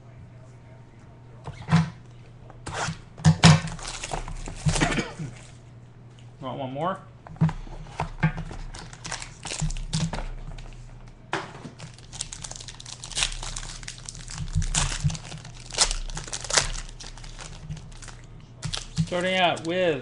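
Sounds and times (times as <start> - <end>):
plastic wrapping crinkling and tearing: 3.6 - 5.6, 8.5 - 10.2, 11.8 - 20.0.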